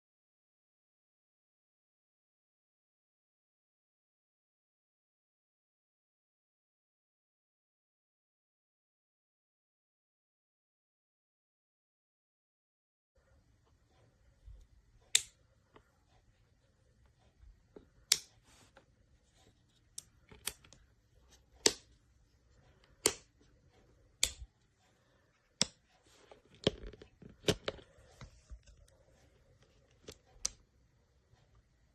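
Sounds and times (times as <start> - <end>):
toggle switches clicking: 15.1 - 15.4, 18.0 - 18.4, 19.9 - 20.8, 21.6 - 21.9, 22.8 - 23.4, 24.2 - 24.5.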